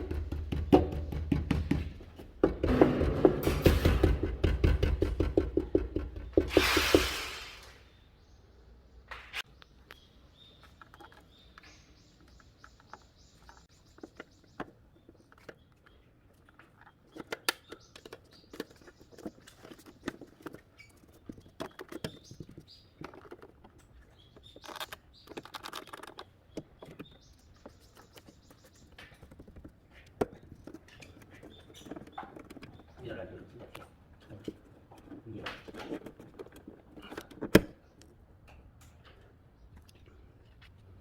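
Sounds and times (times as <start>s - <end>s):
hands and tools handling parts: 9.1s - 41.0s.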